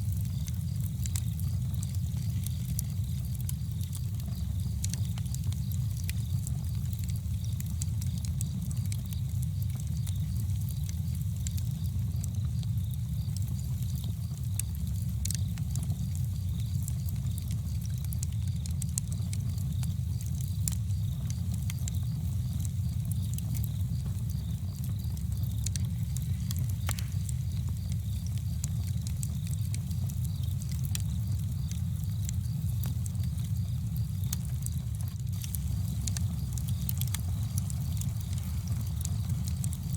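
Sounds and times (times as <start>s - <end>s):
campfire crackling: 0.0s - 39.9s.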